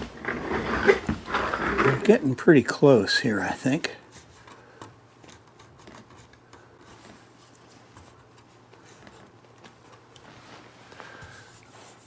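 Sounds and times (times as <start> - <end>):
razor blade scraping wood: 0.1 - 2.1.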